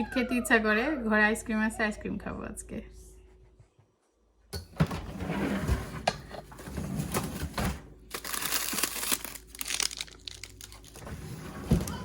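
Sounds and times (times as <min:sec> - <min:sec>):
packaging crinkling and rustling: 0:07.1 - 0:11.2.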